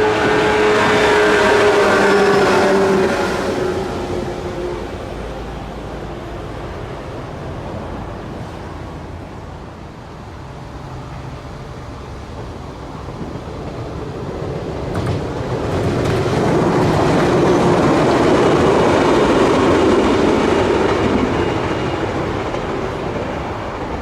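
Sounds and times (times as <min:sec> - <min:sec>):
train passing: 0:00.0 - 0:24.0.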